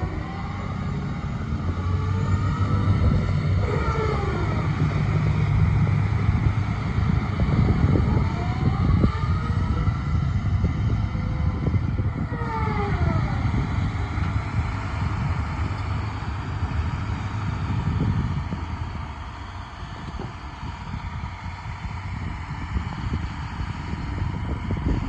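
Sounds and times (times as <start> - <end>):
whine sliding down in pitch: 0.0 - 14.7
diesel engine deep rumble: 0.0 - 25.0.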